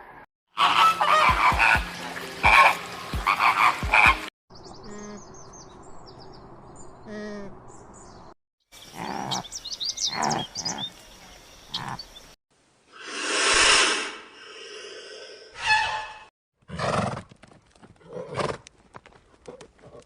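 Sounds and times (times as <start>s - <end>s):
faint high bird chirps: 4.5s - 12.4s.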